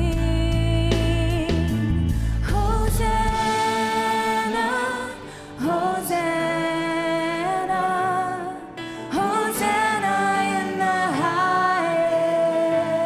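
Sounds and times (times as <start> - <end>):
bass: 0.0 - 3.6.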